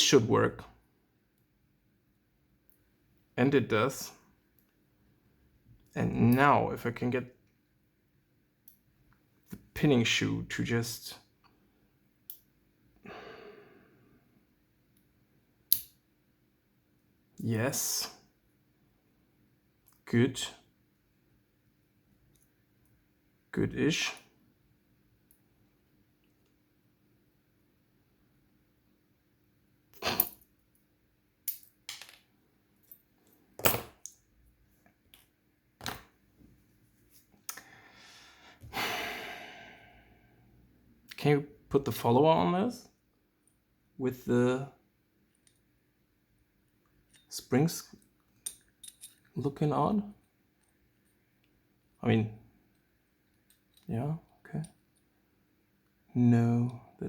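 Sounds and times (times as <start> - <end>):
breathy exhale: 13.0 - 14.1, 37.6 - 40.4
small metal parts clicking: 48.4 - 49.3.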